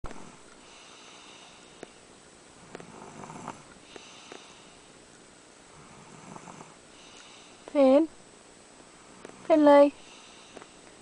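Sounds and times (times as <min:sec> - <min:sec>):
child snoring softly: 0:02.6 - 0:04.8, 0:05.7 - 0:07.5.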